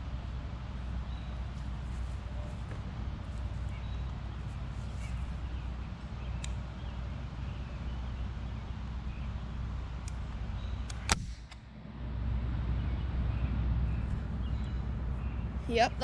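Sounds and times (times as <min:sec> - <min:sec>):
low background rumble: 0:00.0 - 0:16.0
air gun shot: 0:11.0 - 0:11.6.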